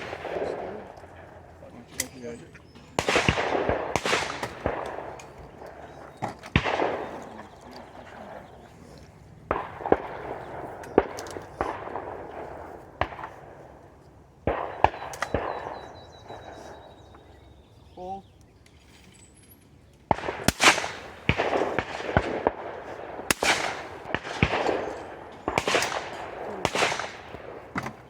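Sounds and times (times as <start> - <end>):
shotgun shots with echo: 0.0 - 1.0, 2.9 - 7.6, 9.5 - 13.6, 14.5 - 16.8, 20.1 - 28.0
sharp short cracks: 20.1 - 28.0.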